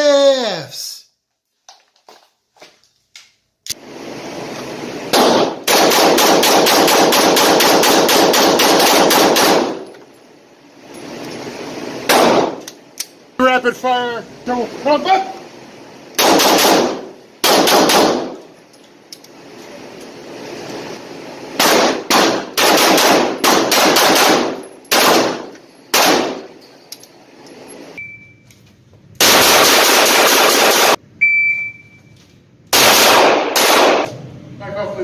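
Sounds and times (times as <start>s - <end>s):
gunfire with ringing echo: 5.1s - 9.9s, 12.1s - 12.6s, 16.2s - 18.4s, 21.6s - 26.5s, 29.2s - 31.0s, 32.7s - 34.1s.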